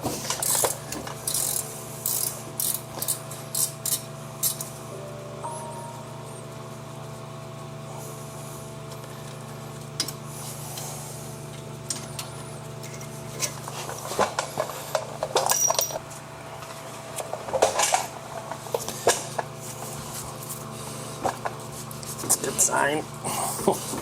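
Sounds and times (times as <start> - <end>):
steady low hum: 0.0 - 24.0
metal tools clinking: 15.4 - 16.0.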